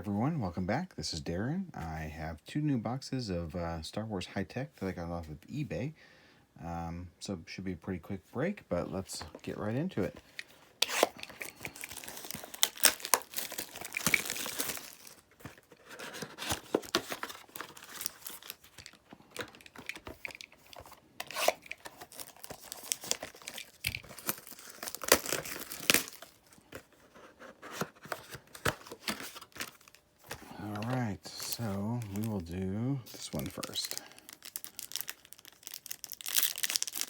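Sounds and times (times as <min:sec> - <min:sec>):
plastic wrapping torn and crinkled: 0:10.8 - 0:26.7, 0:33.2 - 0:37.0.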